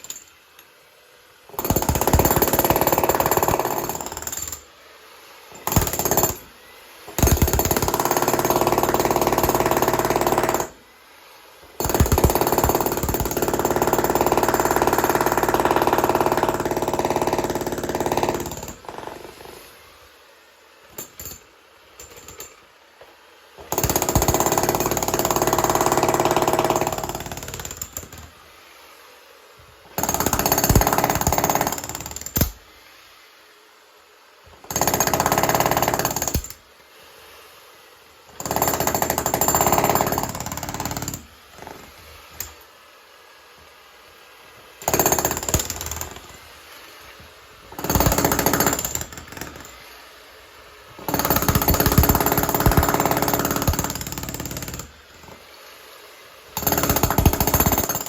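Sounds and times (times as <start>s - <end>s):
jackhammer breaking concrete: 1.6s - 4.6s, 5.6s - 6.4s, 7.2s - 10.7s, 11.8s - 19.3s, 23.7s - 28.2s, 30.0s - 32.6s, 34.7s - 36.6s, 38.4s - 41.7s, 44.8s - 46.3s, 47.7s - 49.7s, 51.1s - 54.9s, 56.6s - 58.0s.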